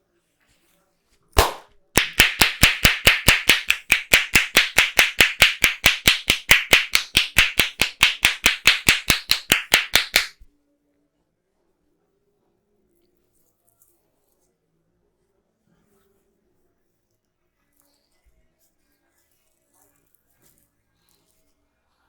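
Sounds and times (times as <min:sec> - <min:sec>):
hands slapping in massage strokes: 0:01.4 - 0:10.5.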